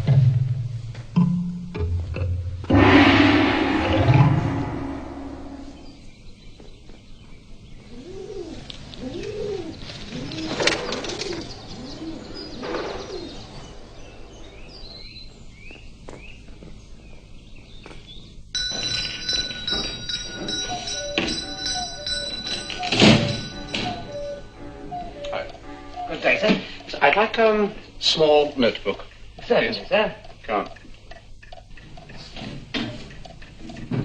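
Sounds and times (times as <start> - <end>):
held music tones: 1.2 - 6.1, 18.6 - 28.9
pigeons cooing: 7.8 - 13.6, 20.6 - 26.9.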